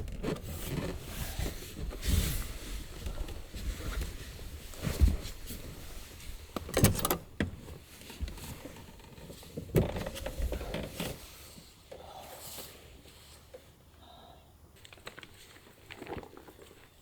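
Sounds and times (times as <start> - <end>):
faint rustling: 0.0 - 13.8.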